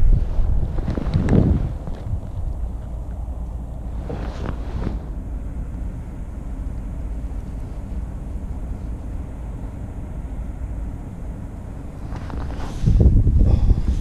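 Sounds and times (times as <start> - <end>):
brief rustle: 0.0 - 2.9, 4.0 - 5.1, 12.0 - 13.1
wind buffeting microphone: 0.0 - 14.0.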